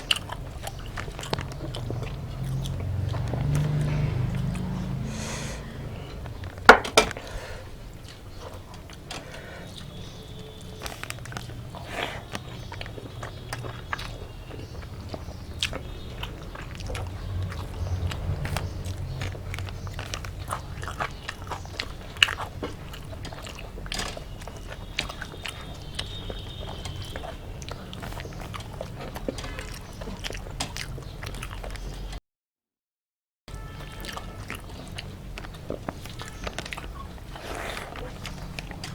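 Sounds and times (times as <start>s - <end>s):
chewing and biting food: 0.0s - 32.2s, 33.5s - 38.9s
sharp knocks: 6.6s - 7.2s.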